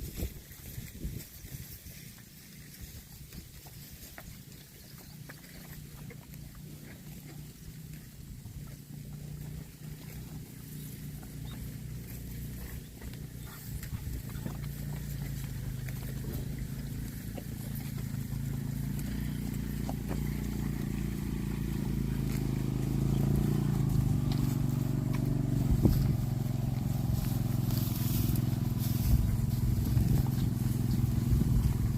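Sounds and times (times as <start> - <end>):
engine running: 0.0 - 31.9.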